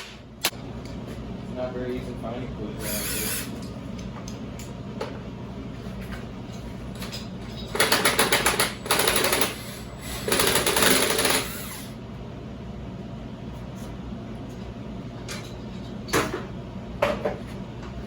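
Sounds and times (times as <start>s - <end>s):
impact wrench hammering: 7.8s - 9.6s, 10.2s - 11.5s.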